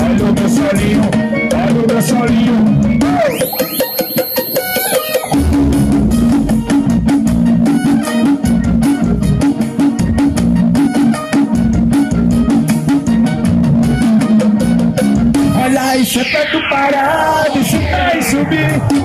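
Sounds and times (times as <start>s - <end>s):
electronic dance music: 0.1s - 19.0s
rising sweep: 3.3s - 7.7s, 15.2s - 19.0s.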